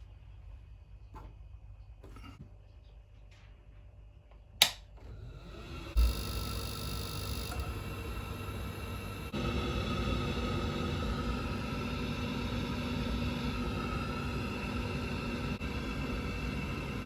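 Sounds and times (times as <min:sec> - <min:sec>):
boiler rushing hum: 0:03.9 - 0:17.0
boiler click: 0:04.6 - 0:04.9
fan whirring: 0:04.6 - 0:17.0.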